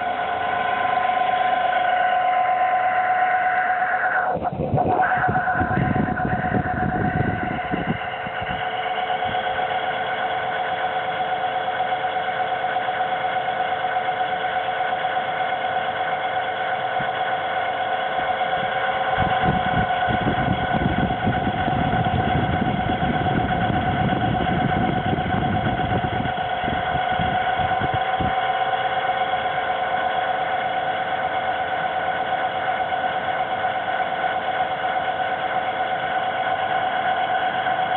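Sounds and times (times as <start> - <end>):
air conditioner whine: 0.0 - 11.0, 18.4 - 34.0
rough low rumble: 2.6 - 9.6.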